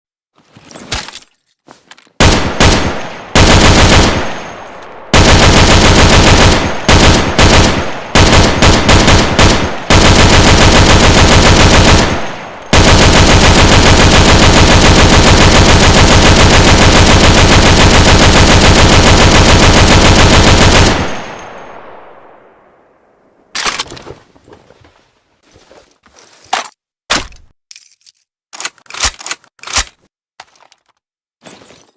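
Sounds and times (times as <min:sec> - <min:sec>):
machine gun firing in bursts: 0:02.2 - 0:21.4.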